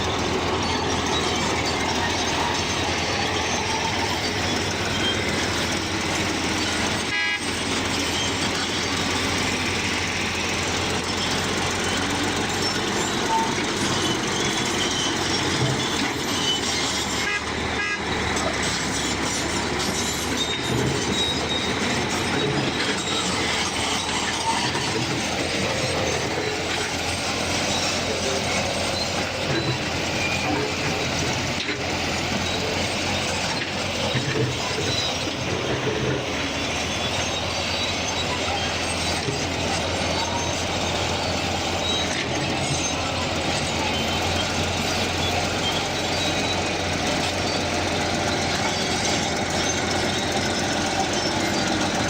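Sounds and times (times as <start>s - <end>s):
heavy machinery running: 0.0s - 52.0s.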